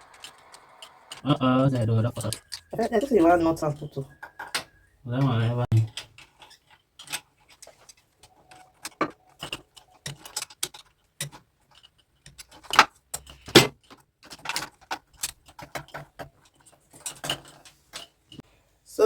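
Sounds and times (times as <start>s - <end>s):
metal fittings and tools clinking: 5.9s - 18.4s.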